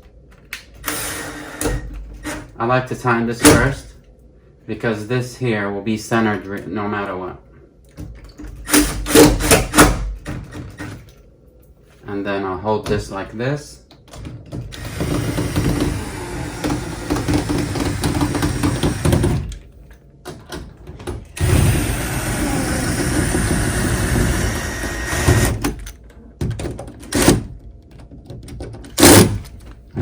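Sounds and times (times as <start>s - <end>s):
cordless drill driving screws: 14.8s - 19.4s, 21.4s - 25.7s.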